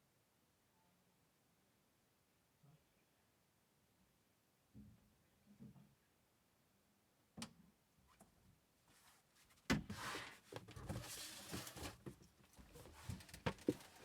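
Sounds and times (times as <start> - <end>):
rustling: 8.9 - 14.0.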